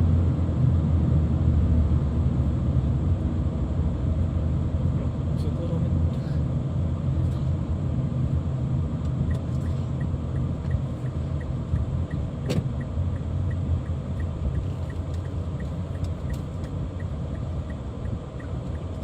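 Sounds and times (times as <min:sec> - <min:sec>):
car engine and road rumble: 0:00.0 - 0:19.0
light regular ticking: 0:09.0 - 0:19.0.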